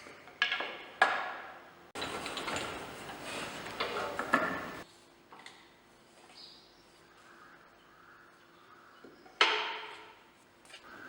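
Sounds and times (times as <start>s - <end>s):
metallic clattering and scraping: 2.0s - 4.9s.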